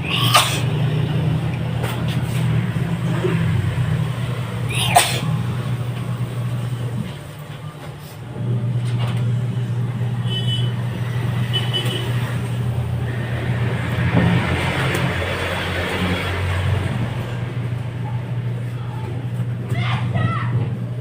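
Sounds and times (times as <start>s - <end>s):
sharp sneeze: 0.0s - 0.7s, 4.7s - 5.4s
steady low hum: 0.0s - 21.0s.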